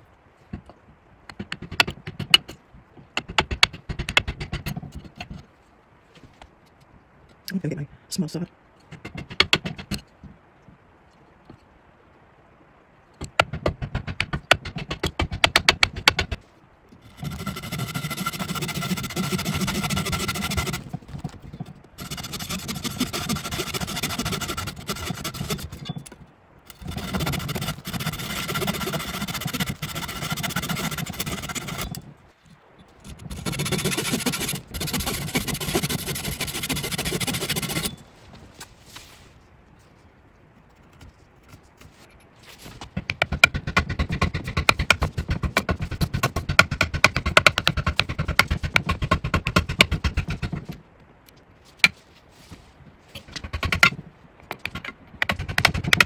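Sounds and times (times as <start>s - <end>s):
small saw cutting: 17.0s - 26.1s, 26.7s - 32.0s, 33.0s - 38.0s, 55.2s - 56.0s.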